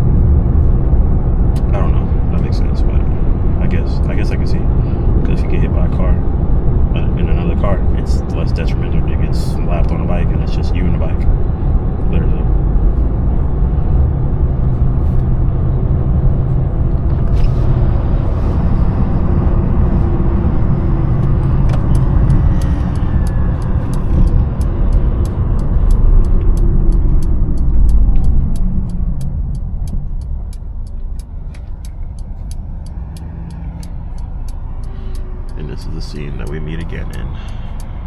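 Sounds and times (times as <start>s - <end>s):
engine rumbling: 0.0s - 38.0s
rapid ticking: 17.0s - 38.0s.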